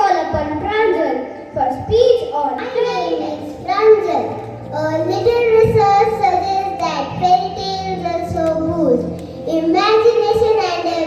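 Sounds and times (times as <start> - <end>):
children singing: 2.6 - 11.0.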